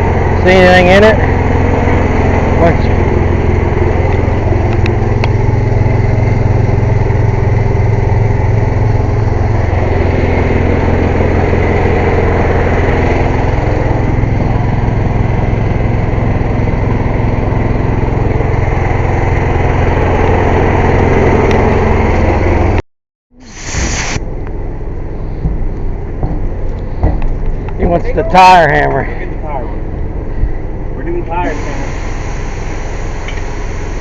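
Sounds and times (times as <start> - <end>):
air compressor running: 0.0 - 34.0.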